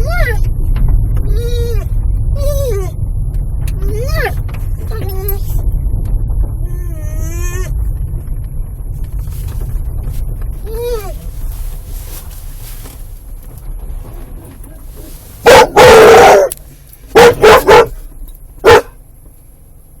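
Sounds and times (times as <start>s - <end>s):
dog barking: 15.4s - 18.0s, 18.6s - 19.0s.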